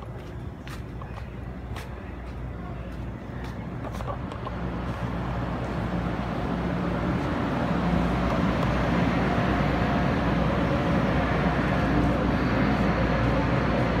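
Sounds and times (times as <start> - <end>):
electric train motor hum: 4.6 - 14.0.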